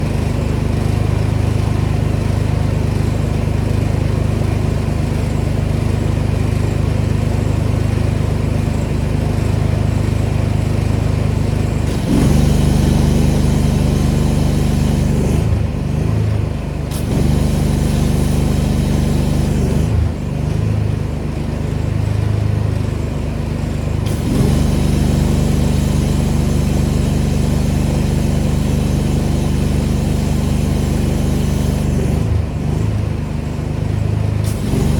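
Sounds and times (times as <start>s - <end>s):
pressure washer engine running: 0.0s - 34.9s
high-pressure water spray hiss: 11.9s - 15.4s, 16.9s - 20.0s, 24.0s - 32.2s, 34.4s - 34.9s.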